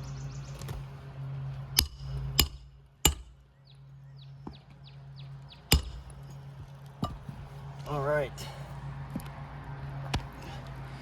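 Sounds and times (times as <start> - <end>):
hammer striking nails into shingles: 1.7 - 3.4, 5.7 - 6.4.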